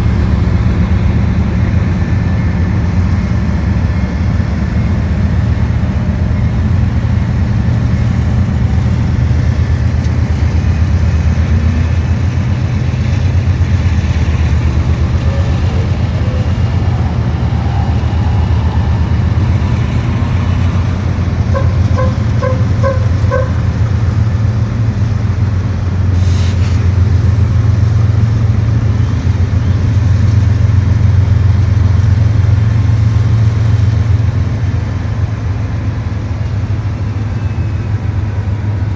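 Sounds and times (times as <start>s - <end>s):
vehicle engine running: 0.0s - 38.9s.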